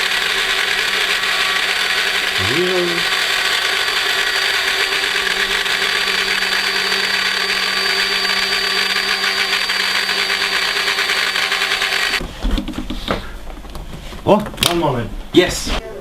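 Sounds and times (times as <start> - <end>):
milling machine high whine: 0.0 - 12.2.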